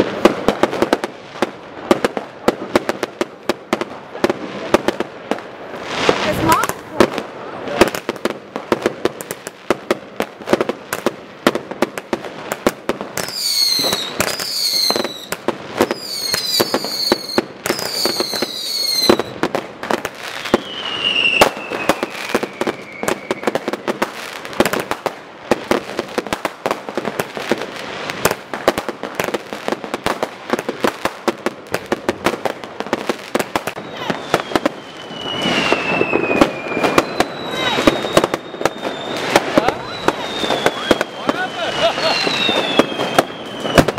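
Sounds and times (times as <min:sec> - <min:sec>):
firecrackers banging and crackling: 0:00.0 - 0:43.9
falling firework whistles: 0:13.1 - 0:19.4, 0:20.0 - 0:24.0, 0:33.3 - 0:43.9.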